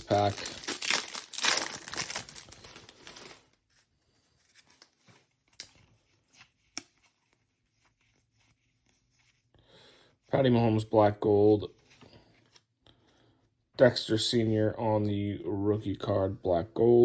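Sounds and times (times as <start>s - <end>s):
card pack wrapper rustling: 0.0s - 3.8s
cards being handled: 0.0s - 9.5s.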